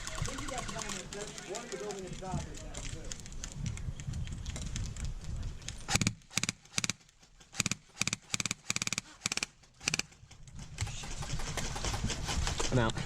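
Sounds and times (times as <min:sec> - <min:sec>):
airsoft rifle firing bursts: 0:05.9 - 0:10.1.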